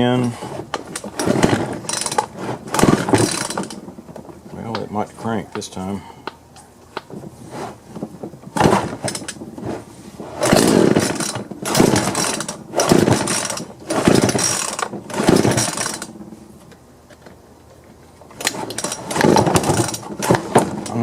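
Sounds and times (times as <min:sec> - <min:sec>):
chainsaw recoil starter pulls: 0:00.0 - 0:03.9, 0:08.6 - 0:09.4, 0:10.4 - 0:16.2, 0:18.4 - 0:21.0
engine turning over: 0:00.0 - 0:04.1, 0:08.5 - 0:09.5, 0:10.3 - 0:16.2, 0:18.4 - 0:21.0.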